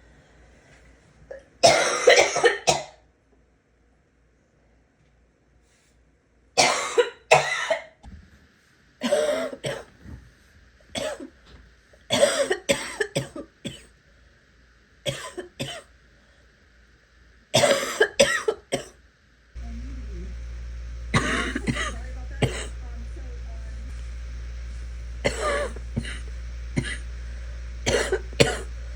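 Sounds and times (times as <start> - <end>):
person gagging cough: 1.6 - 3.0, 21.2 - 22.7, 25.2 - 27.0, 27.9 - 28.7.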